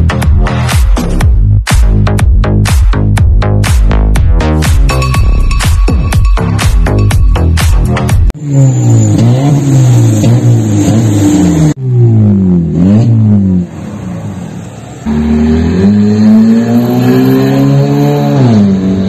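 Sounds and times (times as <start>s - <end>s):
car engine revving: 8.3s - 19.0s.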